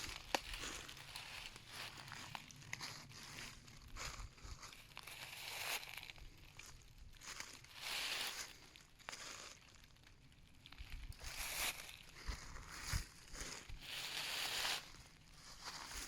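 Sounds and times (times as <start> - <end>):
footsteps crunching through dry leaves: 0.0 - 10.0, 10.7 - 16.0
twigs crackling: 0.0 - 16.0.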